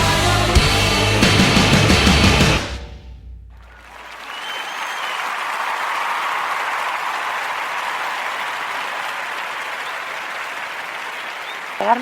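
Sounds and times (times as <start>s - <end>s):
crowd applause and cheering: 0.0s - 2.8s, 3.5s - 12.0s
short whistle: 4.2s - 5.3s.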